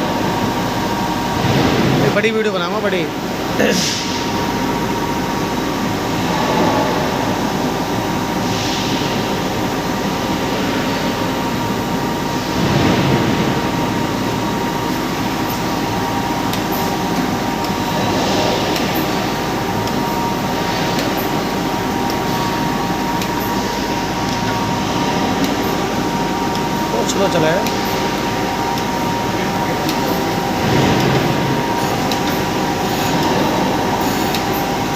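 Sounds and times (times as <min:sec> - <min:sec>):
grinder machine running: 0:12.5 - 0:34.9.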